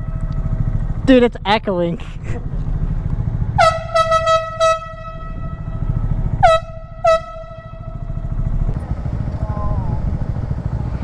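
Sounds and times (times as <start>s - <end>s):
air horn blasting: 0.0s - 0.7s, 3.5s - 8.7s
motorcycle engine idling: 0.0s - 11.0s.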